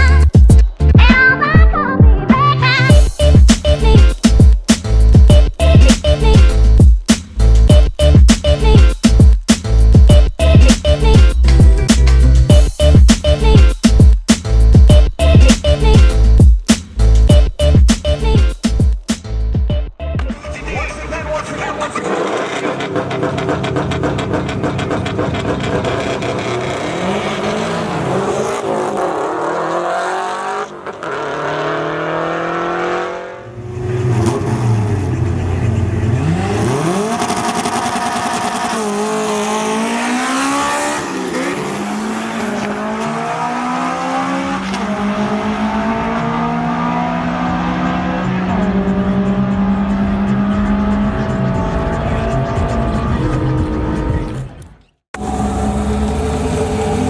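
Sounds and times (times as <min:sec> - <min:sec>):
car engines revving hard: 0:20.8 - 0:57.0.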